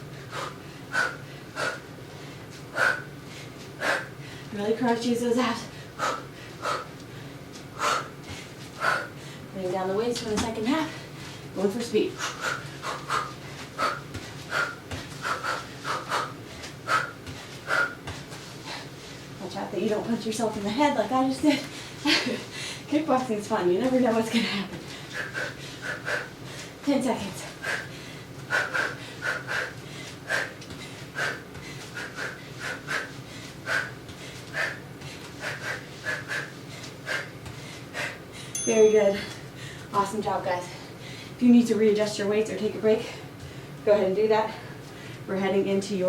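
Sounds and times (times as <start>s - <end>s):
person breathing hard: 0.0s - 4.6s, 5.7s - 9.5s, 12.2s - 19.3s, 24.4s - 38.6s, 40.7s - 41.4s.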